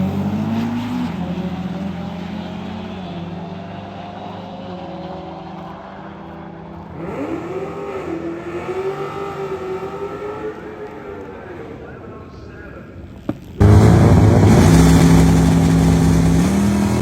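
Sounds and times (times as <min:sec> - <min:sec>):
car engine revving: 0:06.8 - 0:11.3, 0:13.6 - 0:17.0.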